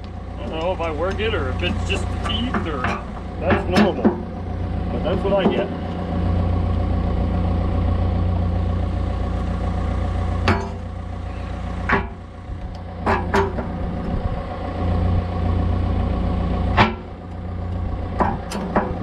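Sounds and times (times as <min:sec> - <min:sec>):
sharp clicks and knocks: 0:00.0 - 0:04.3, 0:11.9 - 0:13.8, 0:16.7 - 0:19.0
excavator diesel engine running: 0:00.0 - 0:19.0.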